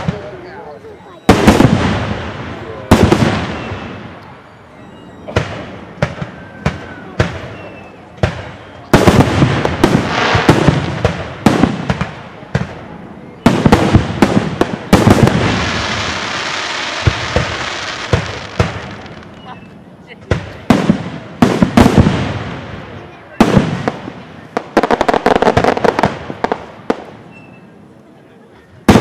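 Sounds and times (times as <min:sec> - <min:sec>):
fireworks bursting: 0:00.0 - 0:27.9
fireworks hissing: 0:05.3 - 0:27.7.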